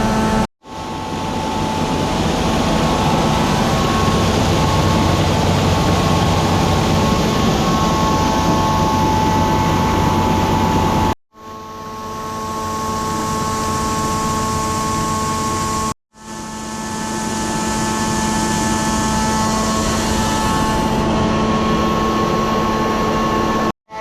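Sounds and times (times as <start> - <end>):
farm machinery running: 0.0 - 11.1
high whine: 0.0 - 24.0.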